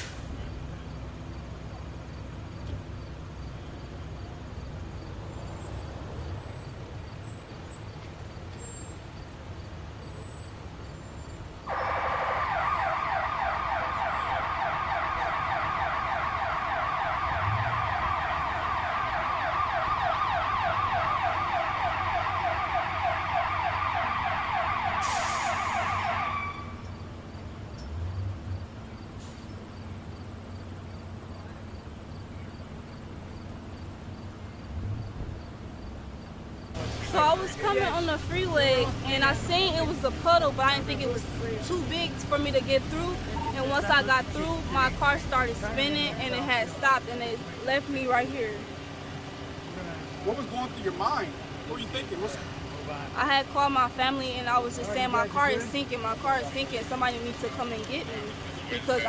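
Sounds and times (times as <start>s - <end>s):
low traffic rumble: 0.0s - 59.0s
emergency siren yelping: 11.7s - 26.8s.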